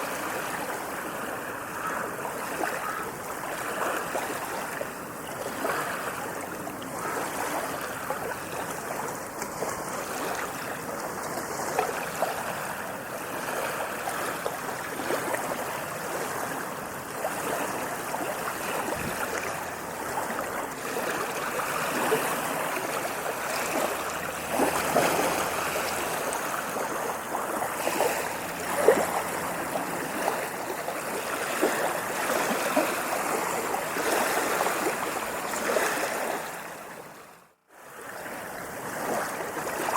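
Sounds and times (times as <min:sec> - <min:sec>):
ocean waves washing: 0:00.0 - 0:39.9
sharp water splash: 0:17.3 - 0:36.5.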